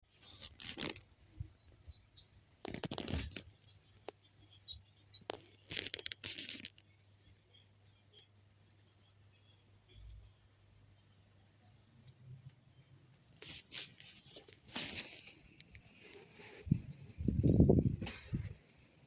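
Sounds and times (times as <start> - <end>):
scratchy rustling: 13.4 - 16.9.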